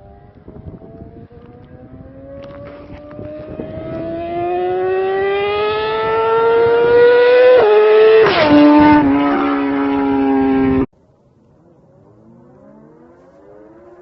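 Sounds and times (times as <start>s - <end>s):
engine at full throttle passing: 0.0s - 10.9s, 11.6s - 14.0s.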